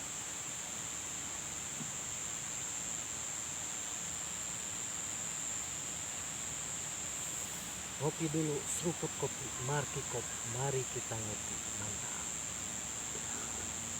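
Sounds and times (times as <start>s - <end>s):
crickets chirring: 0.8s - 13.9s
even hiss: 4.8s - 13.9s.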